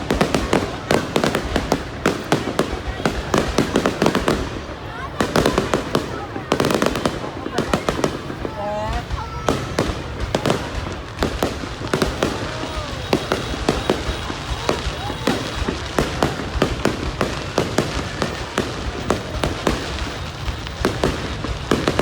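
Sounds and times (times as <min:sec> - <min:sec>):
fireworks bangs and crackles: 0:00.0 - 0:22.0.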